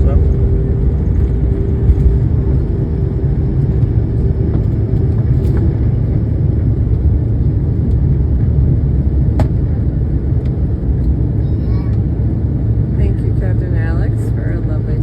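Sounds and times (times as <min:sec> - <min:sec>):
airliner engines rumbling: 0:00.0 - 0:15.0.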